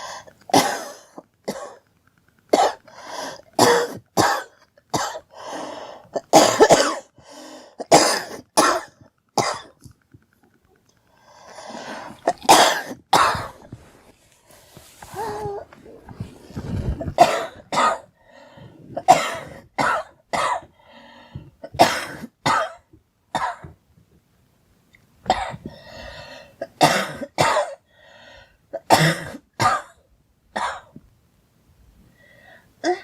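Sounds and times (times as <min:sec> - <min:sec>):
quiet breaths: 0:00.0 - 0:00.5, 0:02.8 - 0:03.6, 0:05.3 - 0:06.2, 0:07.1 - 0:07.8, 0:10.9 - 0:12.3, 0:13.5 - 0:19.7, 0:20.6 - 0:21.6, 0:25.5 - 0:26.8, 0:27.8 - 0:28.7, 0:31.8 - 0:33.0
girl coughing: 0:00.5 - 0:01.8, 0:06.2 - 0:07.2, 0:07.9 - 0:09.8, 0:12.3 - 0:13.6, 0:17.1 - 0:18.1, 0:18.9 - 0:20.7, 0:21.6 - 0:22.8, 0:26.7 - 0:27.8, 0:28.8 - 0:29.9.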